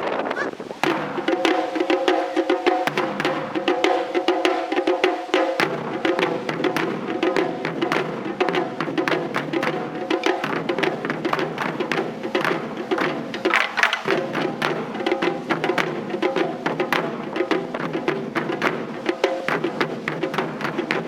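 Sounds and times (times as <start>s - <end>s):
dry clacking hits: 0.8s - 17.5s
taiko drums playing fast rhythm: 0.8s - 21.0s.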